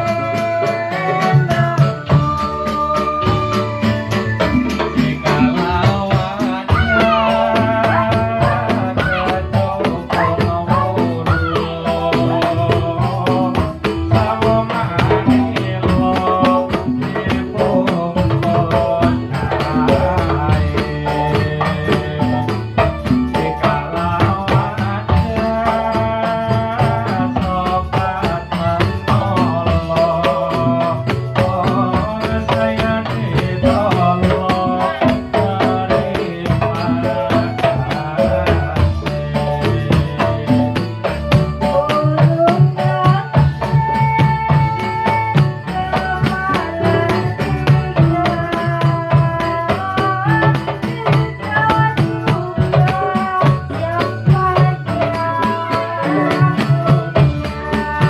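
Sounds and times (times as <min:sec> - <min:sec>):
frame drums and percussion: 0:00.0 - 0:58.0
wavering melody line: 0:00.9 - 0:14.7.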